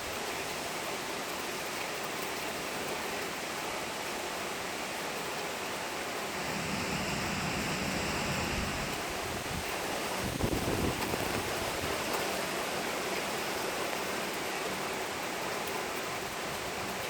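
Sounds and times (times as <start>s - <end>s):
steady rain hiss: 0.0s - 17.0s
wind rumble on microphone: 6.3s - 12.2s.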